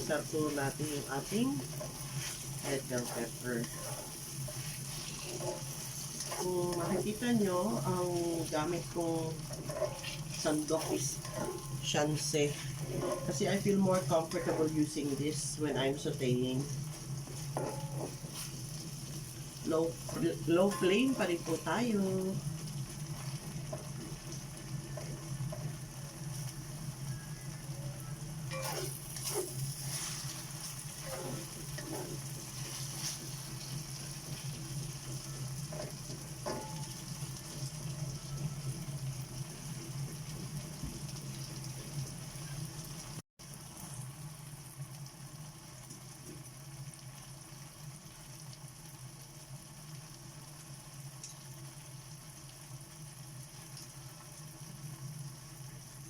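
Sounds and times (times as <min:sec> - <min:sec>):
vegetables sizzling in oil: 0:00.0 - 0:56.0
ladle scraping pan: 0:01.6 - 0:07.7, 0:09.4 - 0:14.8, 0:17.3 - 0:18.6, 0:28.5 - 0:33.8.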